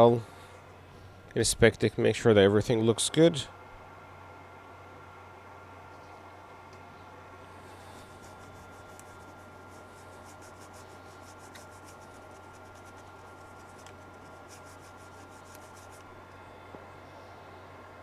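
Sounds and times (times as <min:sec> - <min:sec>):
faint steady hum: 0:00.0 - 0:18.0
scrubbing on a circuit board: 0:07.8 - 0:16.1.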